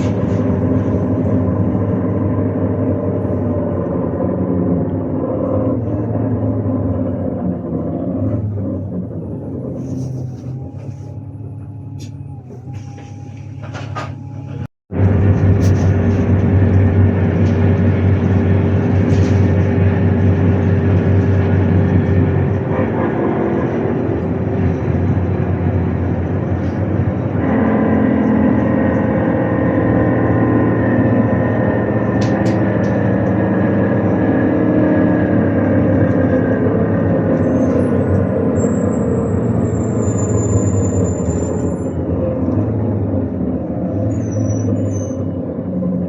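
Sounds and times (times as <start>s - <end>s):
bus engine running: 0.0s - 46.0s
high squeal of braking bus: 9.4s - 14.7s, 36.9s - 42.9s, 43.7s - 45.8s.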